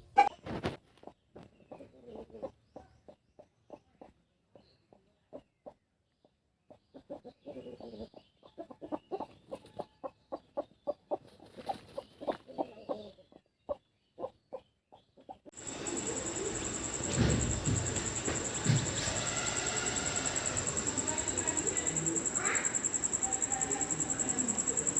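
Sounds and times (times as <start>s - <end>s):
chicken clucking: 0.0s - 24.9s.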